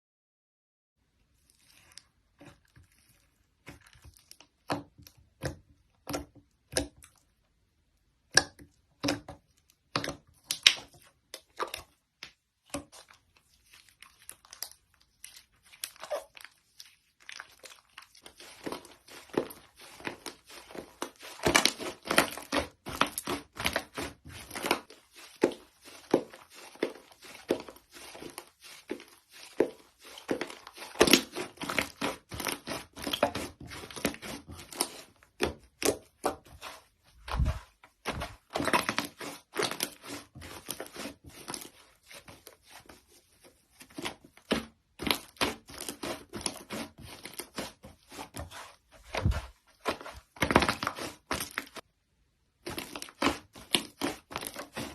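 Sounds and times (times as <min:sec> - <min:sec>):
slime popping and crackling: 0:10.0 - 0:11.8, 0:13.9 - 0:36.6, 0:37.2 - 0:41.8.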